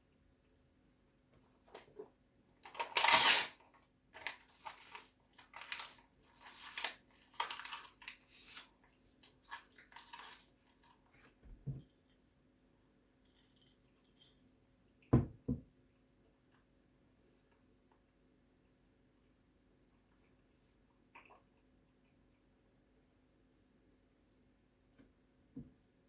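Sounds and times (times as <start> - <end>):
paper rustling: 2.6 - 11.1.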